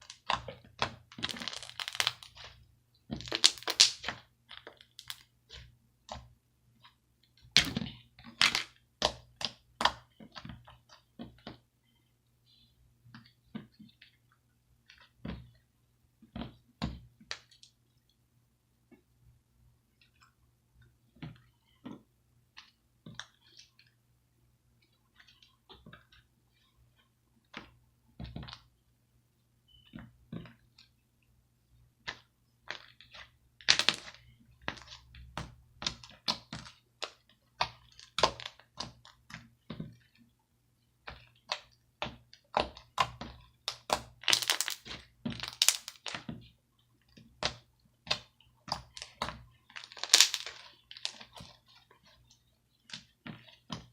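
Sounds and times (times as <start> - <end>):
small sharp pops and cracks: 1.1 - 2.4, 3.2 - 5.3, 43.7 - 46.2, 48.1 - 51.4.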